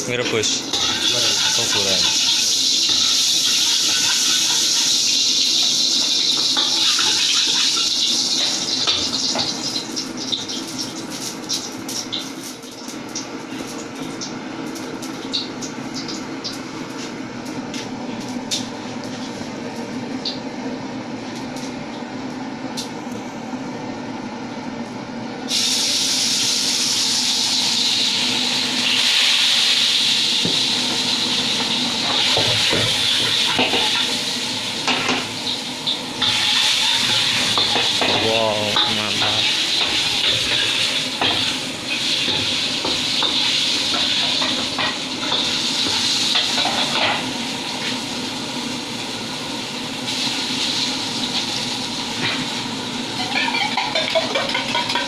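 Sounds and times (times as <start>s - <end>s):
cooking hiss: 0.0s - 20.4s, 25.4s - 55.0s.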